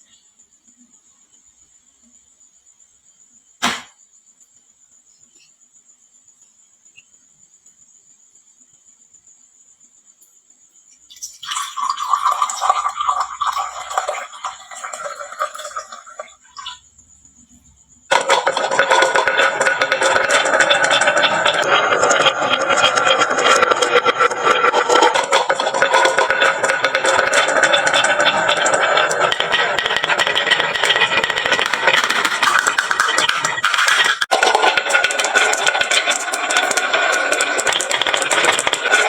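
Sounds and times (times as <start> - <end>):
marbles rattling down wooden run: 11.5 - 16.8, 18.1 - 39.0.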